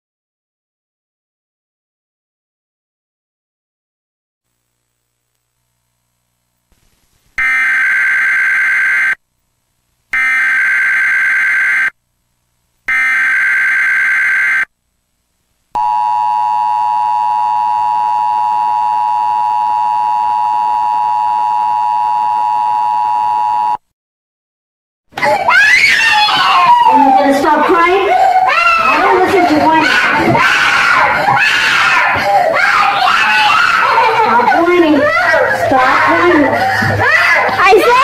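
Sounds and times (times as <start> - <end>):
harsh buzzing data bursts: 4.5 - 23.8.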